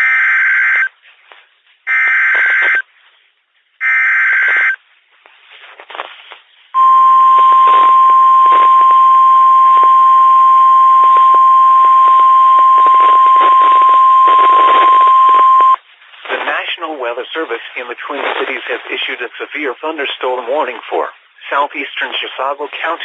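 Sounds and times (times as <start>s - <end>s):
steady alarm tone: 6.8s - 15.8s
radio static: 6.8s - 23.0s.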